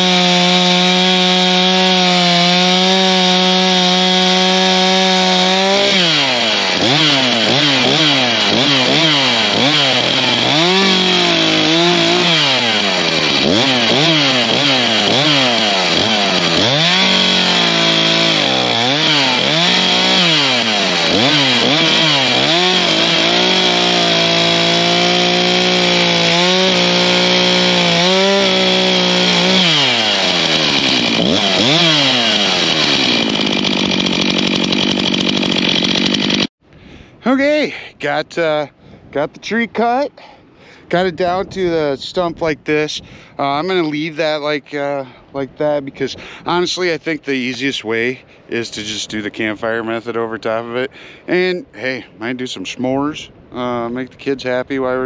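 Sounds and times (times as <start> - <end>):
chainsaw cutting wood: 0.0 - 36.5.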